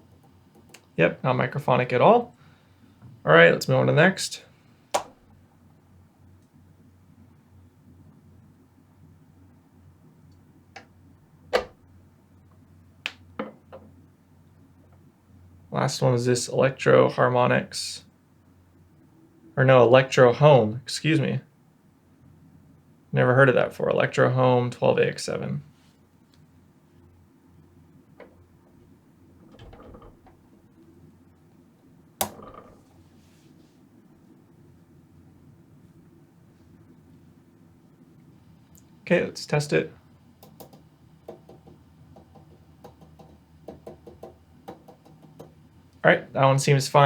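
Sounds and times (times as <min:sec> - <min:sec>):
faint low hum: 0:00.0 - 0:47.0
clicks: 0:05.0 - 0:05.2, 0:32.2 - 0:32.8.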